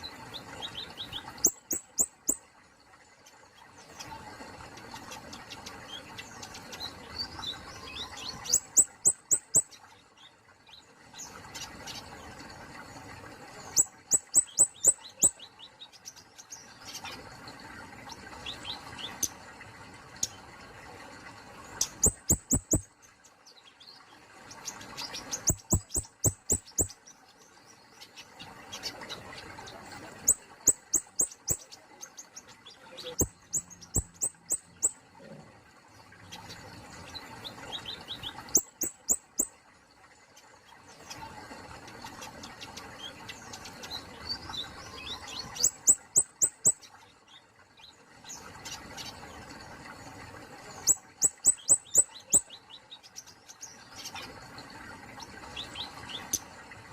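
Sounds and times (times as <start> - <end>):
soft bird warbling: 21.8 - 22.9, 25.2 - 26.9, 32.8 - 35.0
songbird calling sharp high notes: 22.0 - 22.9, 25.4 - 26.9, 33.0 - 35.0.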